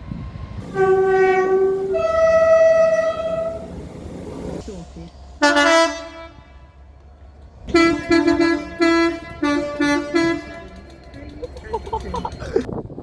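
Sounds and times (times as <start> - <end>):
train air horn blasts: 0.5 - 3.8, 5.4 - 7.0, 7.7 - 11.4.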